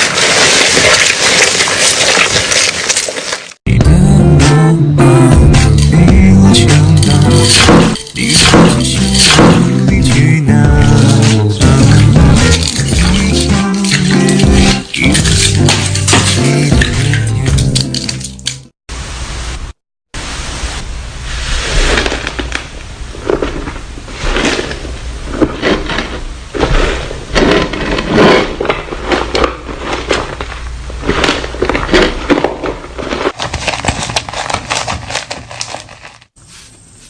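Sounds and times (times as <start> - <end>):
slime squishing and crackling: 0.0 - 3.6, 10.9 - 18.6, 21.7 - 36.4.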